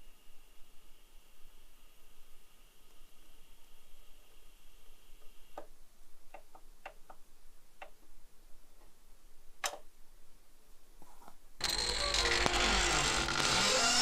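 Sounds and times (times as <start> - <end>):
vinyl record hiss: 0.0 - 14.0.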